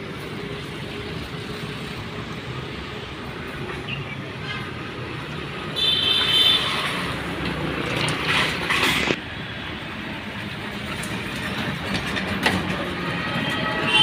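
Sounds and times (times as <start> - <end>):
vehicle road rumble: 0.0 - 14.0
knocks and rattles: 10.9 - 13.1.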